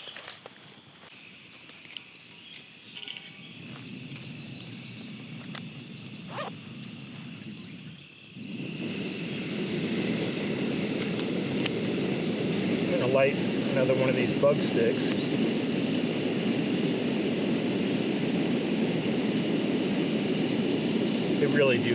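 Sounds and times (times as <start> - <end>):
camp stove burner hissing: 0.6 - 21.9.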